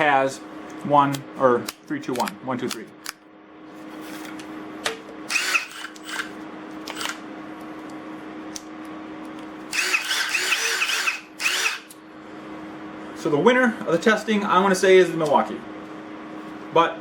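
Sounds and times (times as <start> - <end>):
steady low hum: 0.0 - 17.0
impact driver whirring: 5.3 - 7.2, 9.7 - 12.0.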